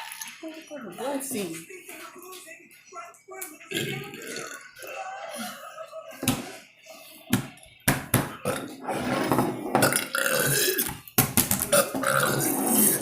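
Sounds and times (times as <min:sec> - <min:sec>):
person burping loudly: 0:03.7 - 0:04.9, 0:08.4 - 0:11.0, 0:11.6 - 0:13.0.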